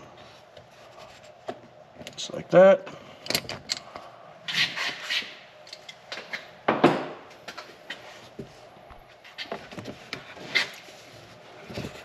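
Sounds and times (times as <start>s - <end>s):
parts clicking and knocking: 3.2s - 4.0s.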